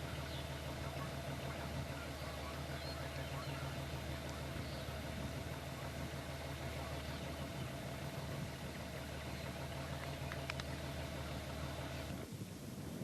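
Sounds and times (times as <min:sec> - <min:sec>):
constant hiss: 0:00.0 - 0:13.0
vehicle engine idling: 0:00.0 - 0:13.0
faint clicks: 0:04.2 - 0:04.6, 0:09.8 - 0:11.0.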